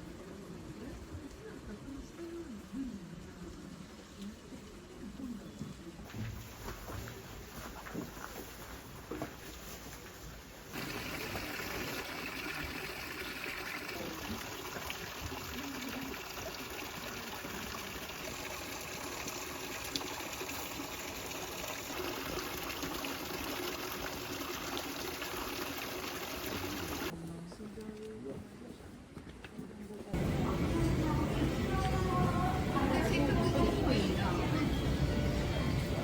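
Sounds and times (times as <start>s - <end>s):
water rushing: 10.7s - 27.1s.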